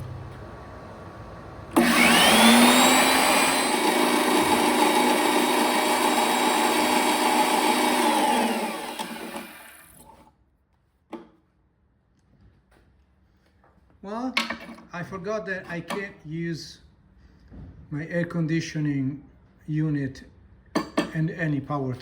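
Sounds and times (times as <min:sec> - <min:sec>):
power tool motor whining: 0:01.8 - 0:10.2.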